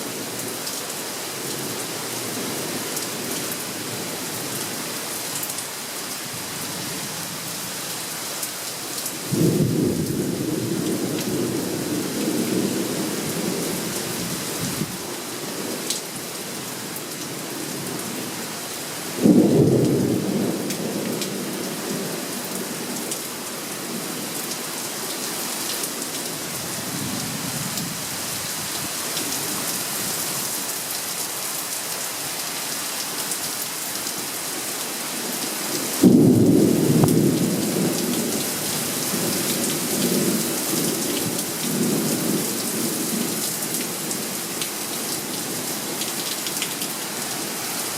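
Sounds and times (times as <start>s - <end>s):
heavy rain falling: 0.0s - 47.9s
thunderclaps rumbling: 9.3s - 12.6s, 36.0s - 38.3s.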